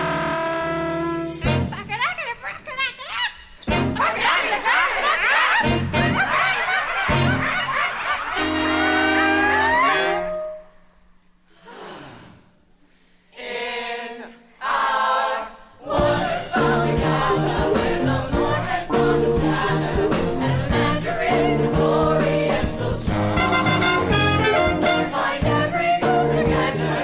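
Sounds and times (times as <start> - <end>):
pit band playing: 0.0 - 2.0, 8.4 - 10.7, 16.0 - 27.0
chorus singing: 13.4 - 27.0.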